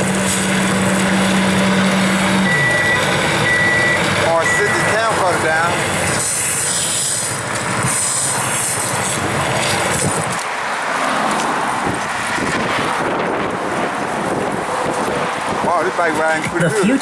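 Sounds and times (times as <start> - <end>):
road traffic noise: 0.0 - 17.0
wind noise on microphone: 5.7 - 17.0.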